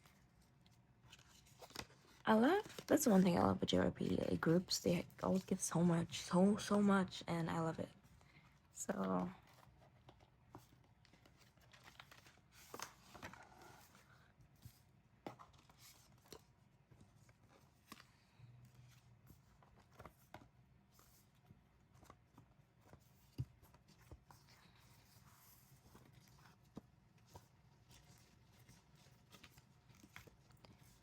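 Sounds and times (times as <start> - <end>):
packaging rustling and clicking: 9.5 - 14.1.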